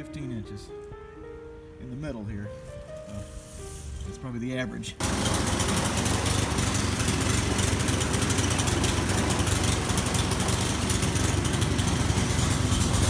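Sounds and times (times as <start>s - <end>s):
snowblower engine running: 5.0s - 13.0s.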